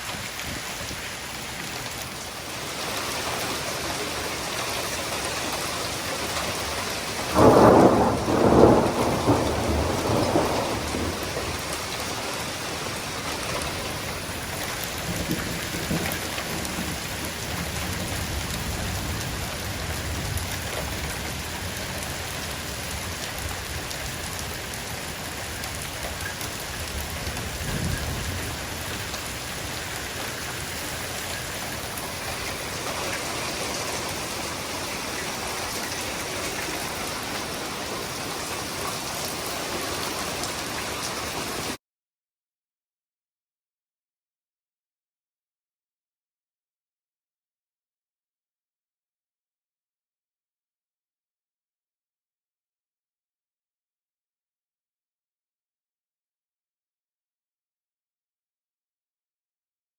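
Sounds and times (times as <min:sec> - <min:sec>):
steady rain falling: 0:00.0 - 0:41.8
thunder rumble: 0:06.5 - 0:22.0, 0:26.8 - 0:41.7.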